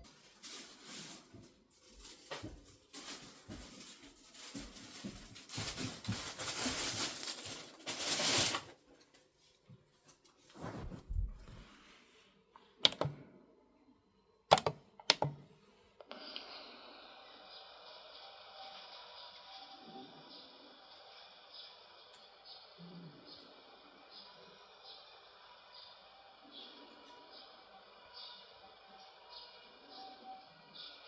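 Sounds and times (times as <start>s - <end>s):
rustling and clatter: 0.0s - 8.8s
steady sound: 10.6s - 11.8s
sharp clicks or knocks: 14.5s - 15.4s.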